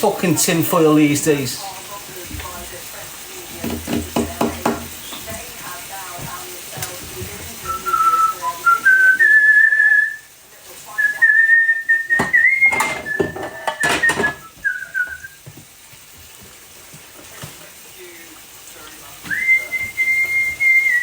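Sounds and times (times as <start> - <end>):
man whistling a tune: 7.6 - 10.3, 11.0 - 15.4, 19.3 - 21.0.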